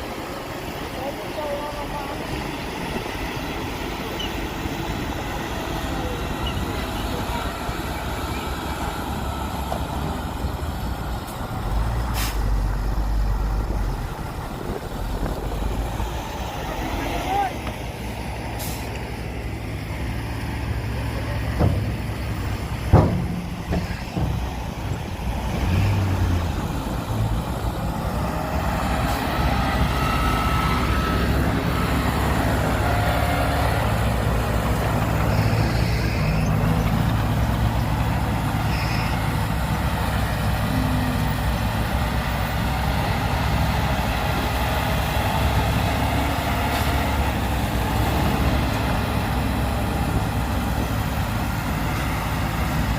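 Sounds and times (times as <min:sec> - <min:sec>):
diesel engines running: 0:00.0 - 0:52.9
sharp knocks: 0:21.5 - 0:25.0.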